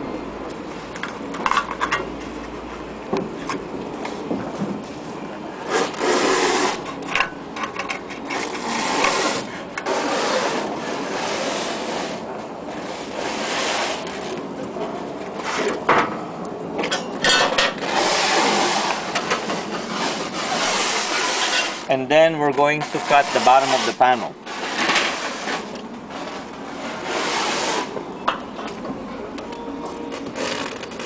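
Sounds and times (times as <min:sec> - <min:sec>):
scraping on sheet-metal roof: 0:05.6 - 0:07.0, 0:08.0 - 0:14.4, 0:17.3 - 0:21.9, 0:22.6 - 0:28.0.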